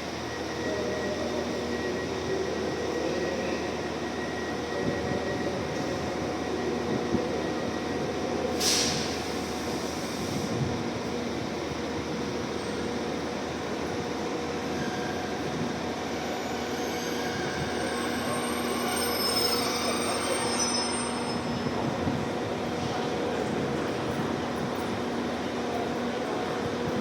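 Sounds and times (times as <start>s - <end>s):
train interior rumble: 0.0s - 27.0s
hiss: 8.5s - 10.6s.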